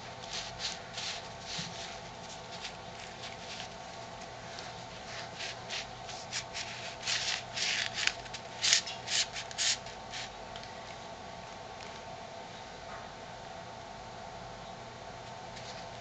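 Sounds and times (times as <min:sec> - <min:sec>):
paper rustling and scraping: 0:00.0 - 0:10.3, 0:15.6 - 0:16.0.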